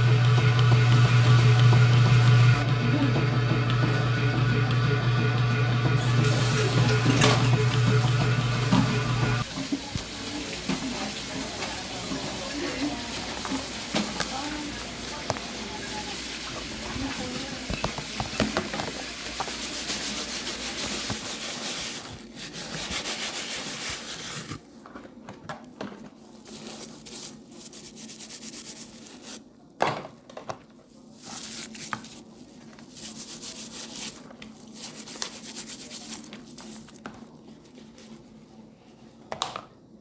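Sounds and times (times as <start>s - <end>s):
scrubbing strokes: 0.0s - 2.6s, 6.0s - 24.6s, 31.0s - 38.4s.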